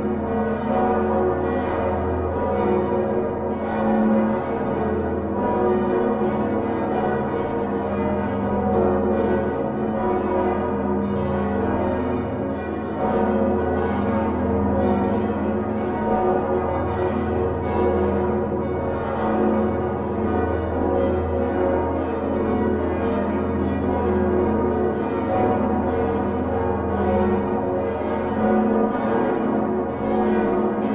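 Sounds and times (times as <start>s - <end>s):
church bells ringing: 0.0s - 30.9s.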